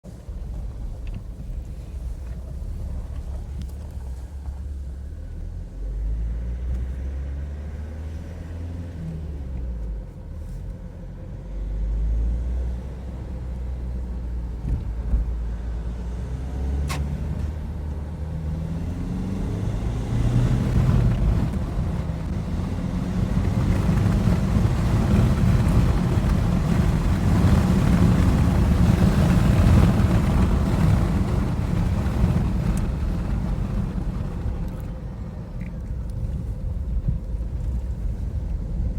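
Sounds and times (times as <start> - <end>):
car engine running: 17.3 - 38.9.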